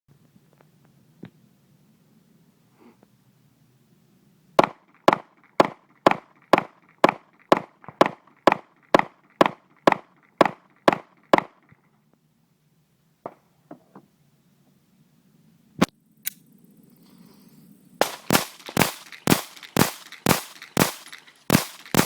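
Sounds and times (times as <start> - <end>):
pistol shots: 4.6 - 11.5, 18.0 - 22.0
faint sharp clicks: 15.8 - 16.4.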